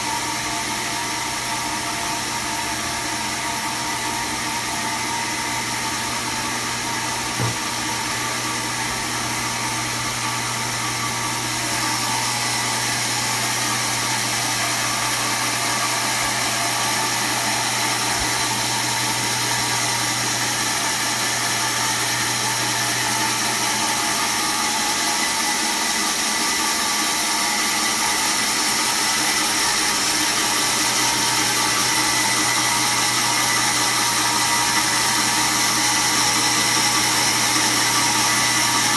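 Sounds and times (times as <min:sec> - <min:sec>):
band saw humming: 0:05.0 - 0:24.6.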